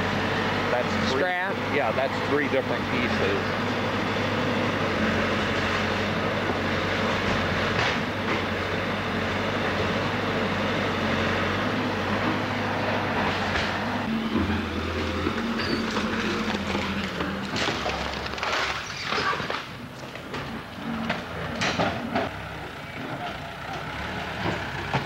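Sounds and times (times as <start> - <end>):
diesel engine running: 0.0 - 25.0
debris crunching and scraping: 15.0 - 20.7.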